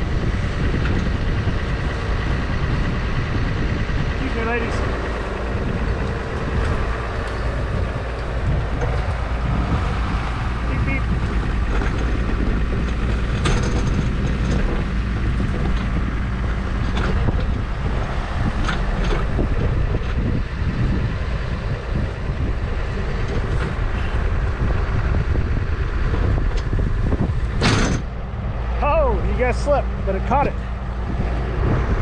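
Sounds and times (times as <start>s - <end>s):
tractor engine running: 0.0s - 32.0s.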